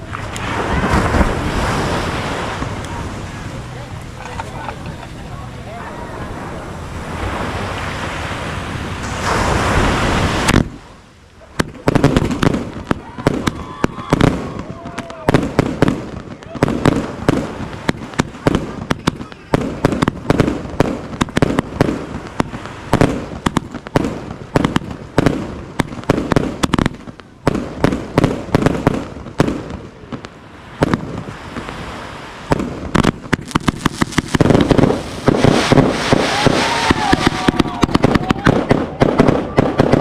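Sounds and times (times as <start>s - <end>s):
fireworks barrage: 0.0s - 40.0s.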